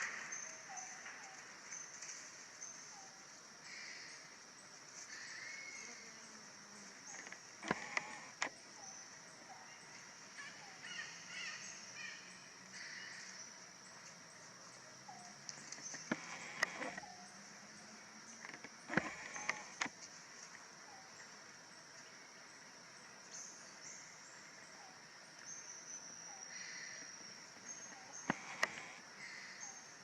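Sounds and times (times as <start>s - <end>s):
high insect drone: 0.0s - 30.0s
animal or bird calls: 7.1s - 9.8s, 15.1s - 17.4s, 18.8s - 19.9s, 27.8s - 29.8s.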